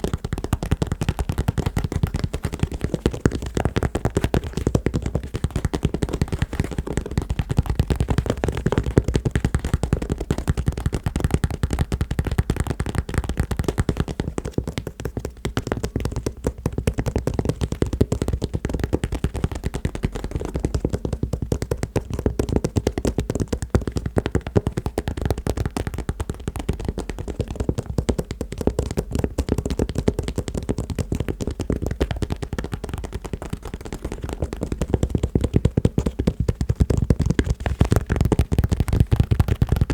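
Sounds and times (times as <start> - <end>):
fingers tapping on shoes: 0.0 - 39.9.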